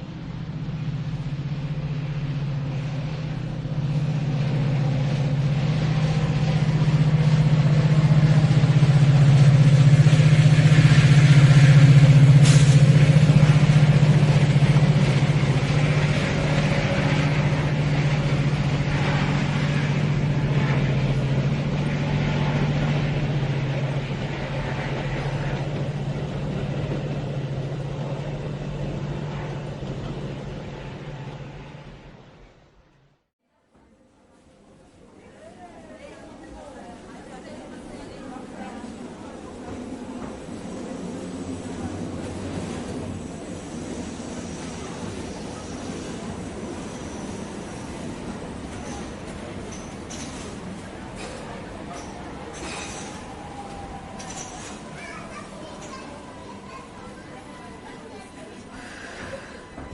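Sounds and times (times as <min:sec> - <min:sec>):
train passing: 0:00.0 - 0:59.9.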